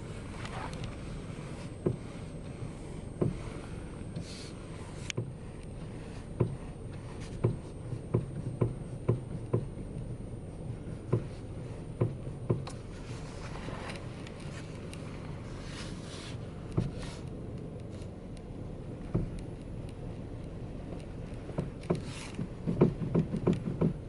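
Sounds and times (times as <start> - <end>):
steady low hum: 0.0 - 24.0
sharp knocks from car steering: 1.8 - 2.1, 3.2 - 3.5, 6.4 - 6.6, 7.4 - 9.8, 11.1 - 12.8, 19.0 - 19.4, 21.5 - 24.0.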